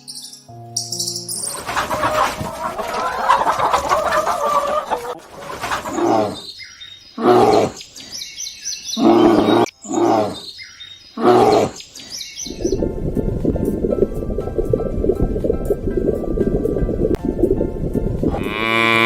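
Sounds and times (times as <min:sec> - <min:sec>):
chickens clucking: 0:01.4 - 0:06.5
loud animal calls: 0:01.5 - 0:06.5.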